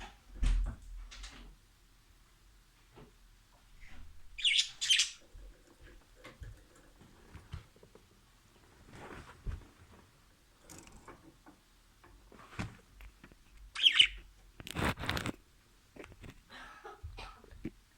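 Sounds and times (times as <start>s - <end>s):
budgerigar chirping and chattering: 4.4s - 5.2s, 13.7s - 14.2s.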